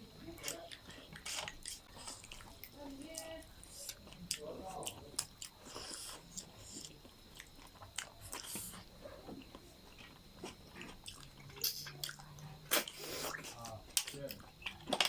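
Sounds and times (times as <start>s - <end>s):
chewing and biting: 0.4s - 15.0s
small clicks and crunches: 13.5s - 15.0s.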